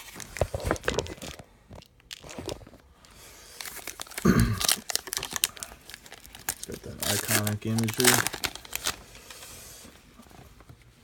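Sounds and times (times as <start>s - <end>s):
foil wrapper crinkling and tearing: 0.0s - 2.8s, 3.5s - 9.4s.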